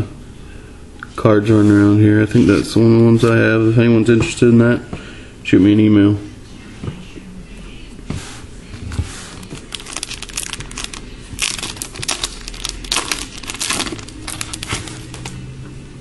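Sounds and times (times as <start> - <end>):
wrapper crinkling: 9.3 - 15.5.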